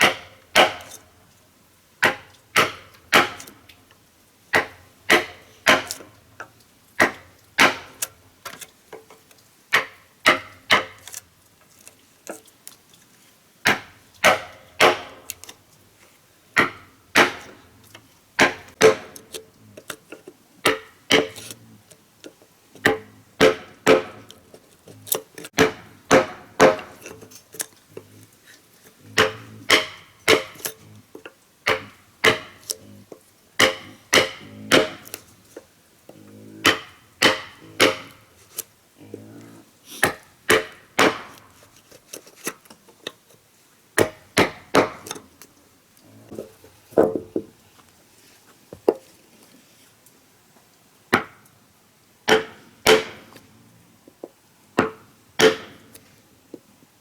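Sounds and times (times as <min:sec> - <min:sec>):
hand tool striking wood: 0:00.0 - 0:01.0, 0:02.0 - 0:03.6, 0:04.5 - 0:06.1, 0:07.0 - 0:08.6, 0:09.7 - 0:11.2, 0:13.6 - 0:15.5, 0:16.6 - 0:17.6, 0:18.4 - 0:21.6, 0:22.8 - 0:28.2, 0:29.1 - 0:30.9, 0:31.6 - 0:32.8, 0:33.6 - 0:35.3, 0:36.6 - 0:38.6, 0:40.0 - 0:42.5, 0:44.0 - 0:45.2, 0:52.3 - 0:53.4, 0:54.8 - 0:56.0.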